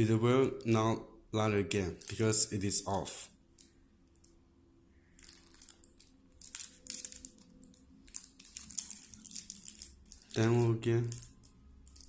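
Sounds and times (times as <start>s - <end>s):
rustling crinkling handling noise: 1.7s - 4.4s, 5.0s - 12.0s.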